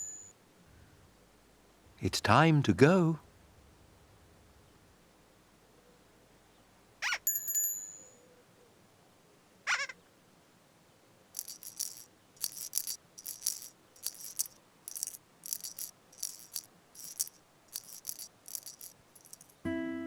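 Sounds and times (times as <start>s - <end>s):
musical shaker rattling: 11.4s - 19.7s.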